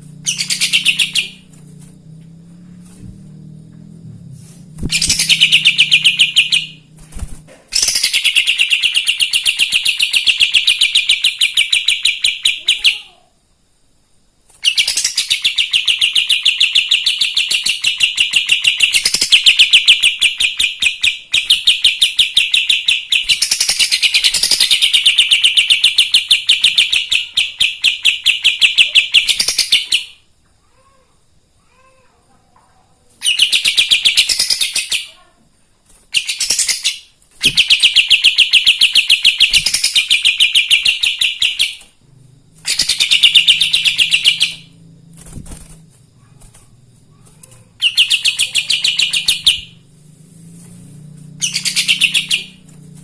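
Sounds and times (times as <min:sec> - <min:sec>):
songbird trilling: 0:00.2 - 0:01.5, 0:04.9 - 0:06.9, 0:07.8 - 0:13.0, 0:36.2 - 0:41.8, 0:42.6 - 0:44.8, 0:47.7 - 0:49.8, 0:51.4 - 0:52.6.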